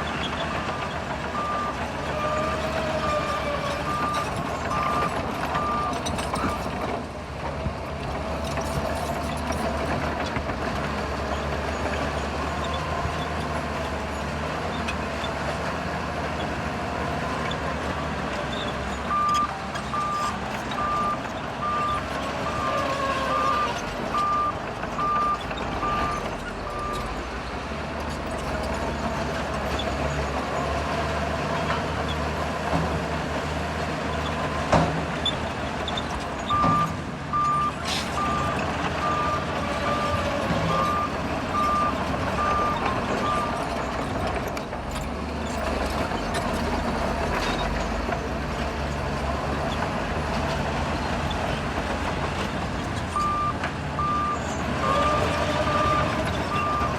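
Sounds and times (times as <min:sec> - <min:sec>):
bulldozer diesel engine running: 0:00.0 - 0:56.9
reversing alarm beeping: 0:19.1 - 0:27.0, 0:36.5 - 0:43.6, 0:53.2 - 0:56.9.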